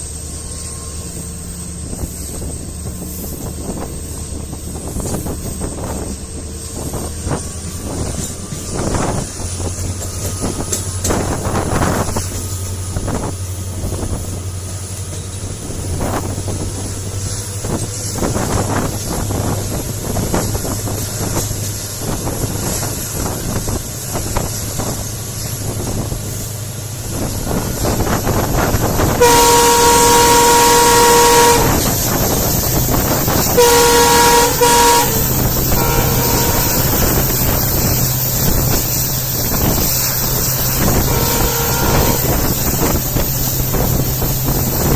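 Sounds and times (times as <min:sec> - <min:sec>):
diesel locomotive humming: 0:00.0 - 0:44.9
train wheels clattering on rail joints: 0:00.0 - 0:44.9
train horn blasts: 0:27.5 - 0:44.9.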